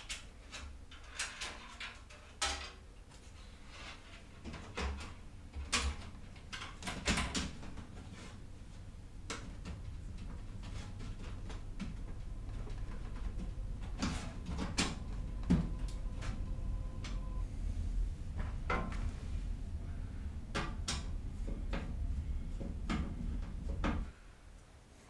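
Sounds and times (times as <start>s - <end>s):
low hum: 8.4s - 24.5s.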